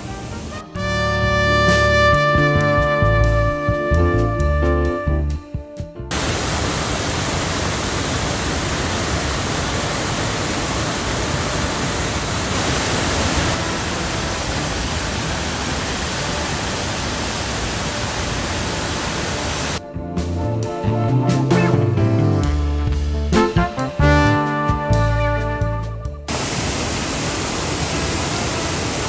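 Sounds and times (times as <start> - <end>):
waterfall rushing: 0.0 - 1.3, 6.1 - 19.8, 26.3 - 29.0.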